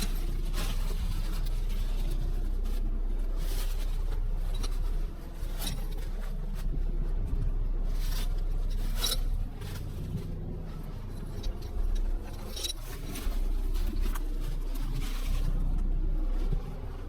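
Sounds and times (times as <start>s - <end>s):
brush and branches scraping: 0.0s - 17.0s
excavator engine running: 0.0s - 17.0s.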